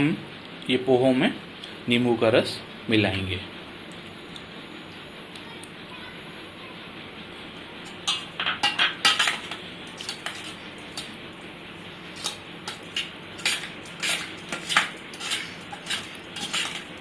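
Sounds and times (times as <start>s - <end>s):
spoon clinking against a strainer: 7.9s - 11.2s, 12.2s - 17.0s.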